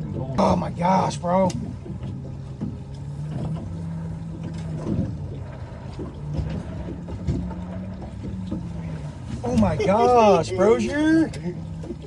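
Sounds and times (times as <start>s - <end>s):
boat engine humming: 0.0s - 12.0s
faint knocks on boat: 1.3s - 9.9s.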